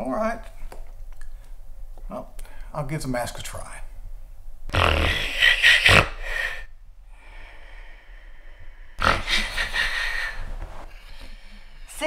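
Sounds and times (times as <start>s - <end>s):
quiet breath: 6.2s - 12.0s.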